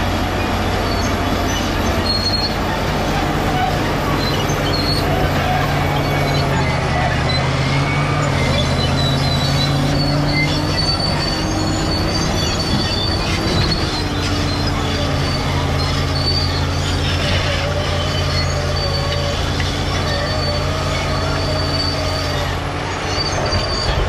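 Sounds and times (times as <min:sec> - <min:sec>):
bulldozer diesel engine humming: 0:00.0 - 0:24.0
steel tracks squealing: 0:00.0 - 0:24.0.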